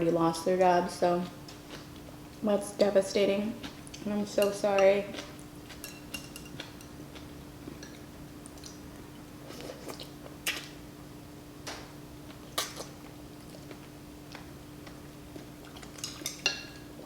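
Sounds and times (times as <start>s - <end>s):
chewing noodle soup: 3.5s - 10.8s, 12.2s - 16.8s.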